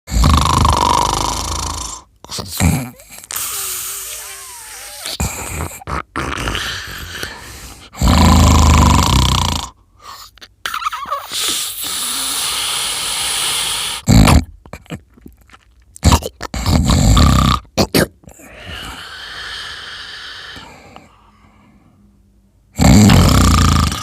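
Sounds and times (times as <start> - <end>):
loud rough snoring: 0.1 - 9.8, 11.4 - 14.5, 16.0 - 17.7, 22.8 - 24.0
short snorts: 0.1 - 14.5, 22.8 - 24.0
hissing breath: 2.4 - 5.8, 6.4 - 8.1, 11.1 - 14.1, 18.4 - 22.0.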